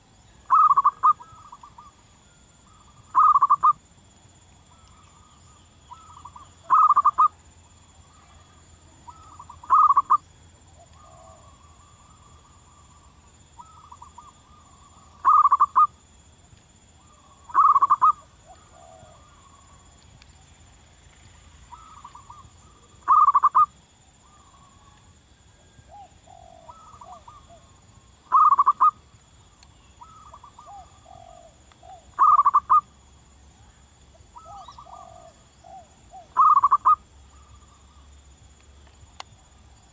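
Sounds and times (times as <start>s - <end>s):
dove cooing: 0.4s - 1.9s, 2.6s - 3.8s, 5.9s - 7.3s, 9.1s - 10.2s, 10.8s - 12.8s, 13.6s - 15.9s, 17.0s - 19.6s, 21.7s - 23.7s, 25.6s - 29.0s, 30.0s - 32.8s, 34.4s - 37.6s.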